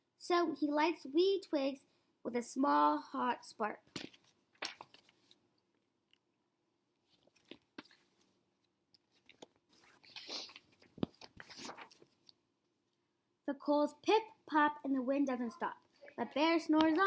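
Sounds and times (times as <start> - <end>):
paper pages rustling: 3.9 - 5.4, 7.1 - 8.4, 9.0 - 12.4.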